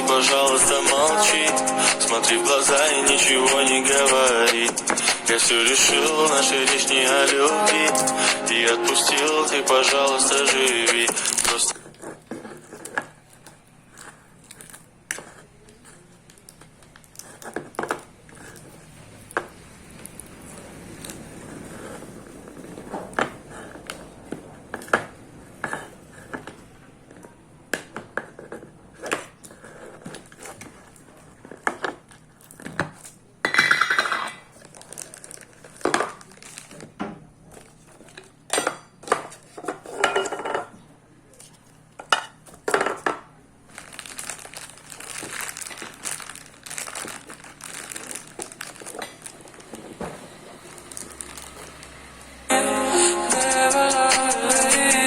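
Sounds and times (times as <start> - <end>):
plastic wrapping crinkling: 2.1 - 25.0, 34.4 - 38.4, 43.6 - 52.4.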